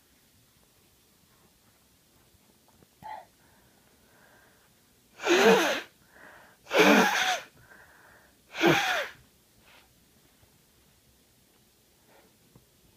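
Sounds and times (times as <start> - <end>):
faint intake of breath: 3.0 - 4.8, 6.0 - 9.9
person sneezing: 5.2 - 5.9, 6.7 - 7.5, 8.5 - 9.2.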